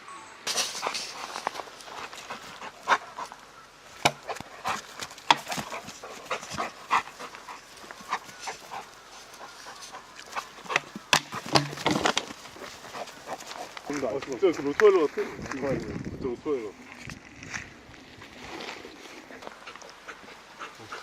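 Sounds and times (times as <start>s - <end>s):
scuffs: 0.5s - 3.4s
dog panting: 0.8s - 3.4s, 4.2s - 11.5s, 12.4s - 13.9s, 19.3s - 21.0s.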